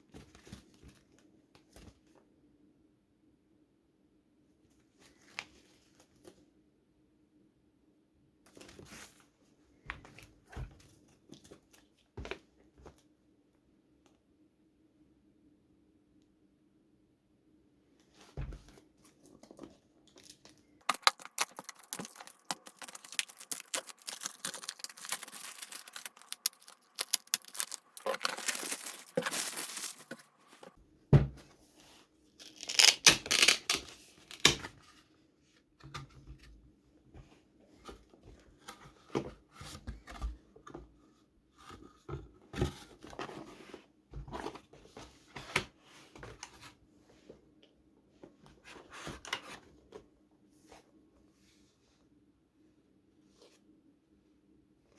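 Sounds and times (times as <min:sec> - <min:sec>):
packaging tearing and crinkling: 0:20.2 - 0:30.7, 0:32.4 - 0:34.6.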